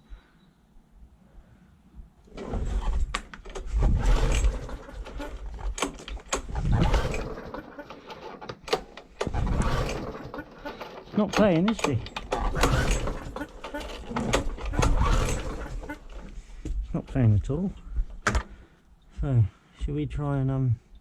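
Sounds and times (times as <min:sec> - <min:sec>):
lawn mower starter cord yanked: 0:02.3 - 0:16.3
lawn mower engine turning over: 0:02.3 - 0:16.4.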